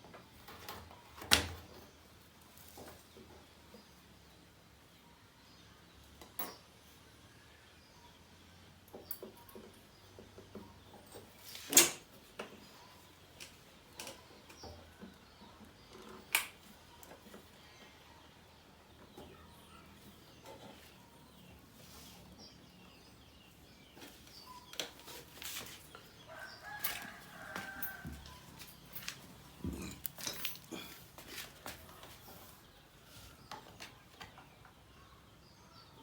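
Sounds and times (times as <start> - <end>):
clicks and knocks of hand work: 8.8 - 12.7, 13.4 - 17.5.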